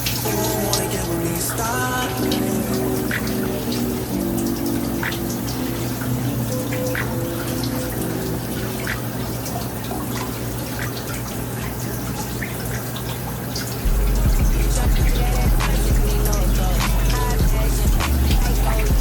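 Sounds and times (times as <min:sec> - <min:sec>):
running water splashing: 0:00.0 - 0:19.0
soft background music: 0:00.0 - 0:19.0
loud low rumble: 0:13.9 - 0:19.0.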